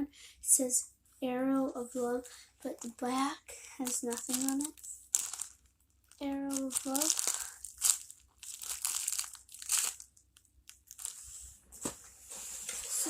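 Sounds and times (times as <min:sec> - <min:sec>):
packaging crinkling and rustling: 0:03.8 - 0:12.0.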